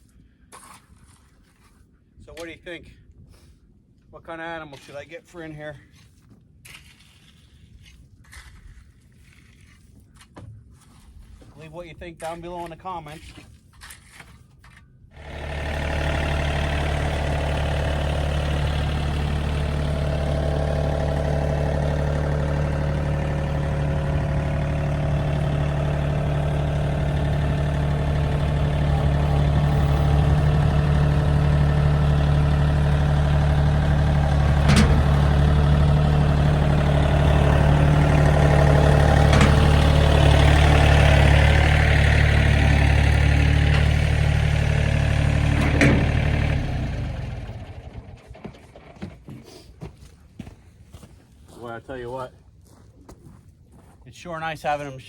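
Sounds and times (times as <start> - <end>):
machine engine running: 15.2 - 48.4.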